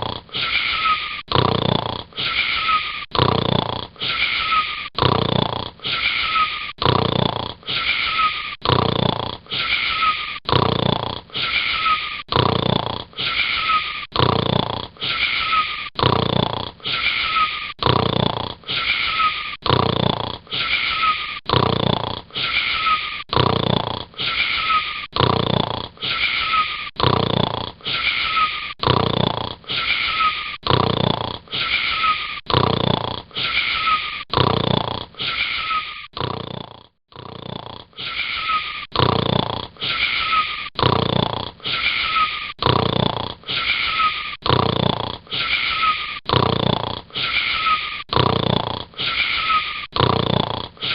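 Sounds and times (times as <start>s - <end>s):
person snoring: 0.0s - 50.9s.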